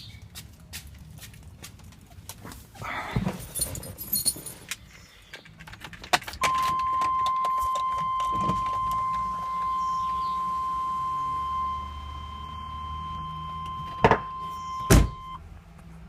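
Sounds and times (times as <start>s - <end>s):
keys jangling: 3.4s - 4.7s
steady high electronic tone: 8.8s - 15.4s.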